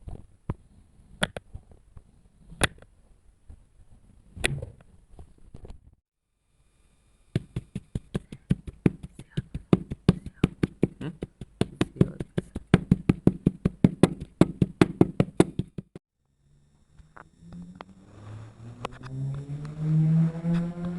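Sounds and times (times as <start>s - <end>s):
knife chopping sand: 7.4s - 16.0s.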